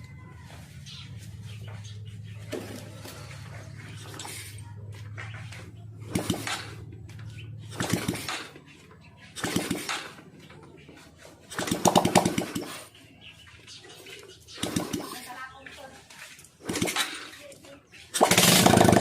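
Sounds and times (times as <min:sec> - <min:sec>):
motorcycle engine cranking: 0:06.0 - 0:10.4, 0:11.5 - 0:12.9, 0:16.5 - 0:17.4, 0:18.1 - 0:19.0.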